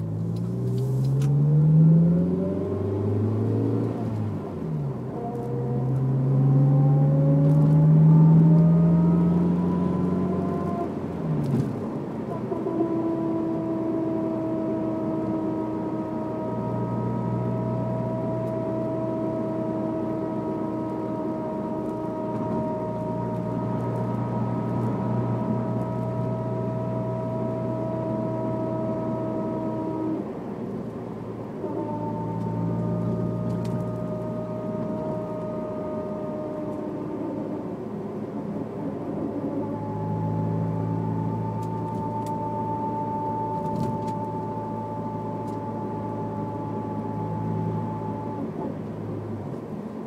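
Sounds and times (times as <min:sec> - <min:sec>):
car engine under throttle: 0:00.0 - 0:50.0
high drivetrain whine: 0:00.0 - 0:50.0.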